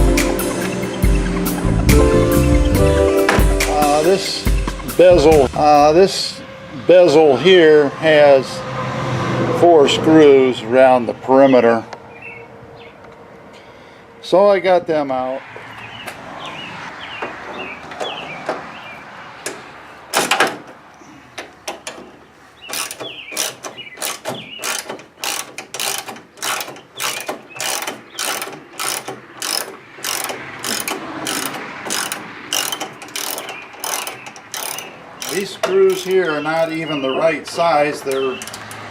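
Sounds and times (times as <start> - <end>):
ratchet tool clicking: 22.7 - 36.2.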